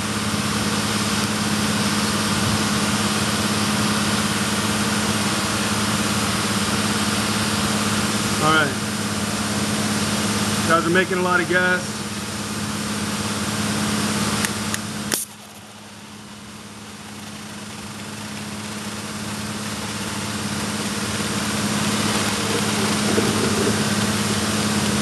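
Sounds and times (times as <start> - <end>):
truck engine hum: 0.0 - 25.0
hiss of gas flow: 11.7 - 25.0.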